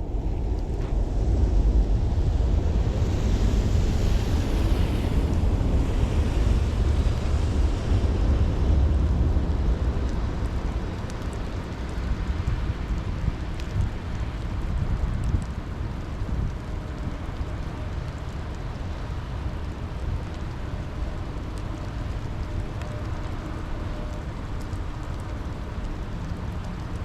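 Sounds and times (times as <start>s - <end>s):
deep continuous rumble: 0.0s - 27.0s
steady rain: 0.0s - 27.0s.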